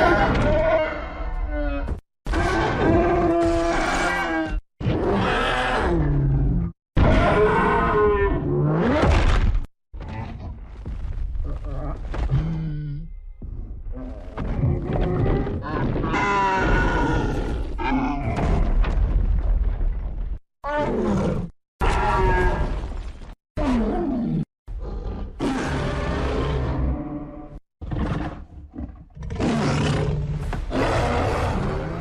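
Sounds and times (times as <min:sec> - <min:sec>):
creature roars and growls: 0:00.0 - 0:09.2, 0:13.9 - 0:18.7, 0:20.6 - 0:23.0, 0:23.6 - 0:32.0.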